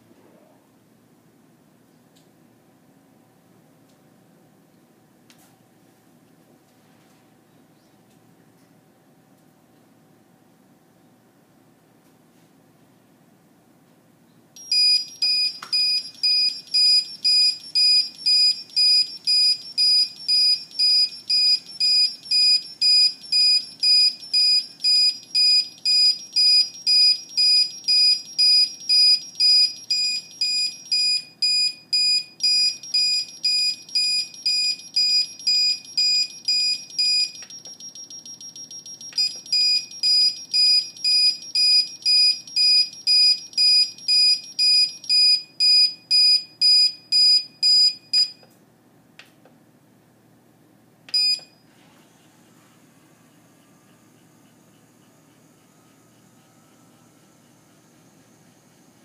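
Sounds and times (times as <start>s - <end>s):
high-pitched alarm beeping: 14.6s - 48.4s
quiet steady alarm tone: 14.6s - 48.4s, 51.1s - 51.7s, 52.6s - 59.0s.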